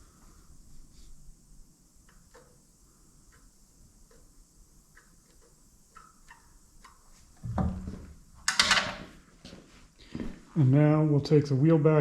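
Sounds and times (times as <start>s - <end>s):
tools clattering: 7.6s - 9.2s.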